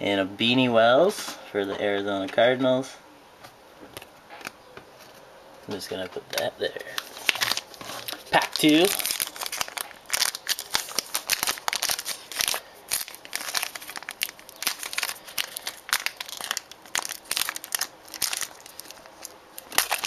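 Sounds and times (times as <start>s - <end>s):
card wrapper tearing and crinkling: 6.4s - 20.0s.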